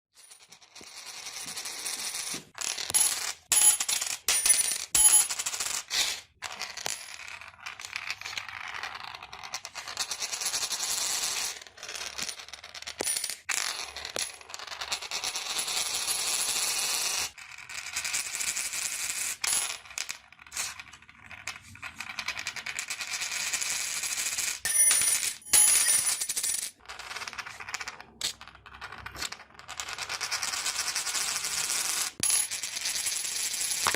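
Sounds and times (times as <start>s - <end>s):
coins spinning on hard surface: 0.2s - 33.9s
sharp coin clinks: 24.6s - 26.7s.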